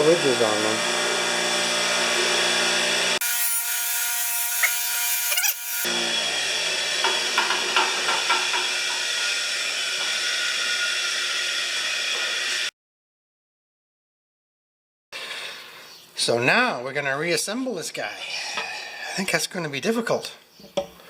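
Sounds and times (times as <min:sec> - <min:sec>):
wire wheel whining: 0:03.2 - 0:05.9
metal parts scratching on wire wheel: 0:03.4 - 0:05.9.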